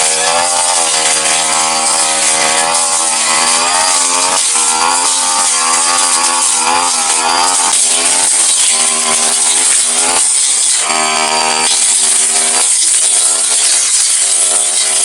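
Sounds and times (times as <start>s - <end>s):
blade cutting grass: 0.0s - 15.0s
brush cutter engine running: 0.0s - 15.0s.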